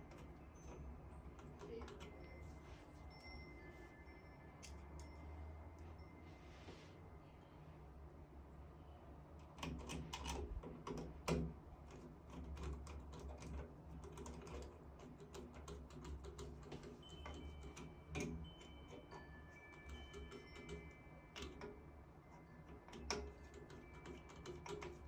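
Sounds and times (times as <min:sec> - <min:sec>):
metal parts clicking and tapping: 0:09.5 - 0:21.8, 0:22.7 - 0:25.0.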